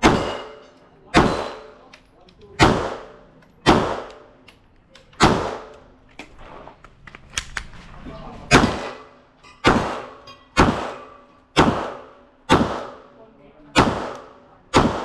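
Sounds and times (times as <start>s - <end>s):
pistol shots with echo: 0.0s - 1.8s, 2.6s - 4.4s, 5.2s - 5.9s, 8.5s - 15.0s.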